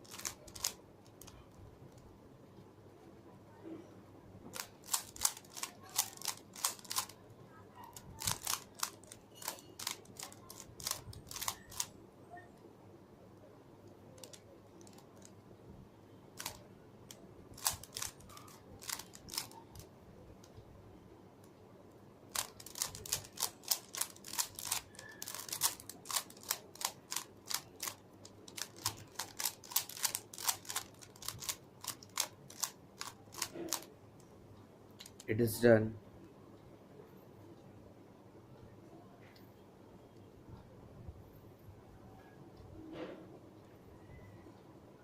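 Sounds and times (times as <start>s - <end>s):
plastic puzzle cube clicking: 0.0s - 2.0s, 4.6s - 7.2s, 7.9s - 11.9s, 14.2s - 15.3s, 16.4s - 20.5s, 22.3s - 33.9s, 35.0s - 35.3s.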